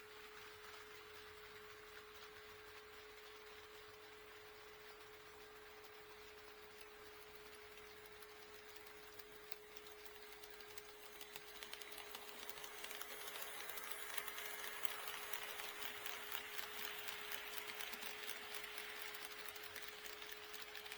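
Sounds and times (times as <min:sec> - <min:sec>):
model train wheels clicking: 0:00.0 - 0:20.9
small motor running: 0:04.2 - 0:20.9.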